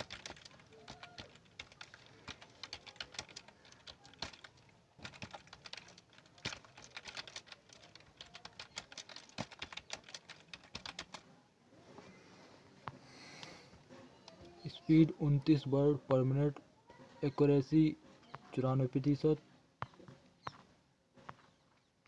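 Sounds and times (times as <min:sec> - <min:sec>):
fast keyboard typing: 0:00.0 - 0:11.2.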